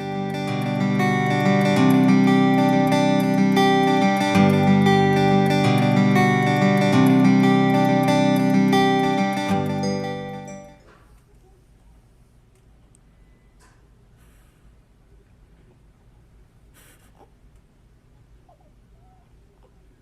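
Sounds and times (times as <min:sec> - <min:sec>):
acoustic guitar chords: 0:00.0 - 0:10.8.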